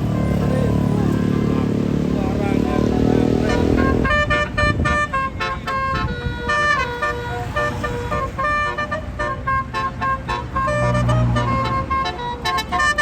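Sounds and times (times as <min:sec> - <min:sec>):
musical air horn tune: 0:03.3 - 0:13.0.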